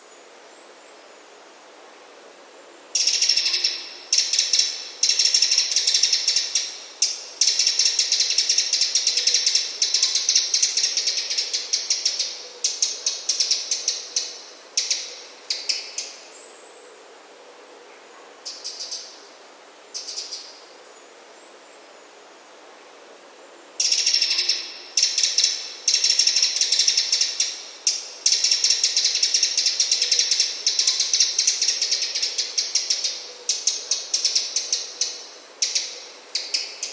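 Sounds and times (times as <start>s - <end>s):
wren ticking rattle calls: 2.9s - 16.4s, 18.4s - 19.2s, 19.9s - 20.6s, 23.8s - 36.9s.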